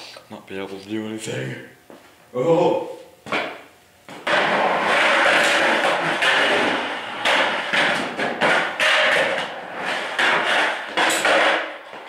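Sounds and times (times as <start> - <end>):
skateboard wheels rolling on concrete: 4.1 - 12.0.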